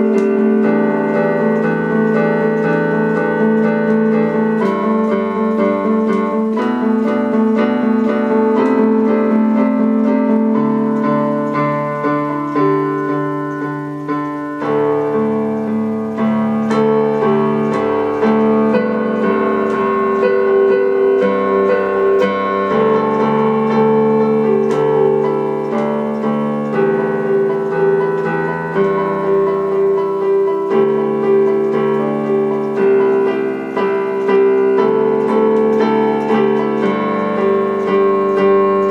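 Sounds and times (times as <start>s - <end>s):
piano music: 0.0s - 38.9s.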